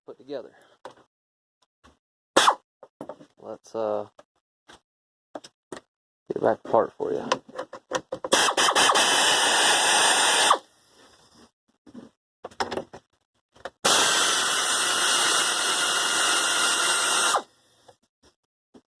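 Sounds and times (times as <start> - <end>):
power drill running: 8.3 - 10.6, 13.8 - 17.5.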